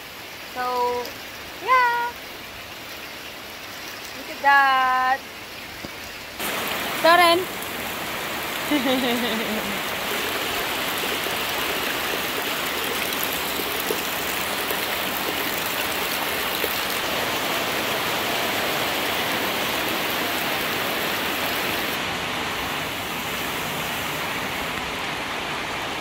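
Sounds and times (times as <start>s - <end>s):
steady rain: 0.0s - 26.0s
rainwater pouring into a container: 6.4s - 22.0s.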